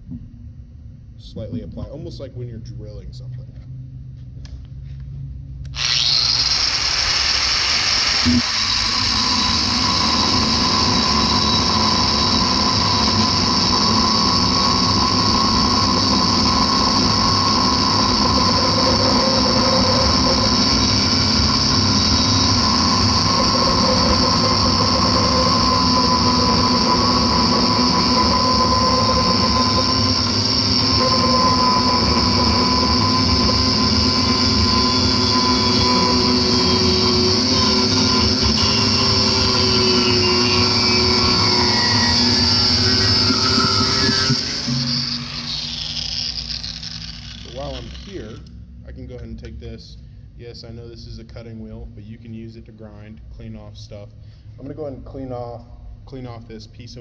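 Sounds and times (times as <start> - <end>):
cutting wheel grinding metal: 5.7 - 48.5.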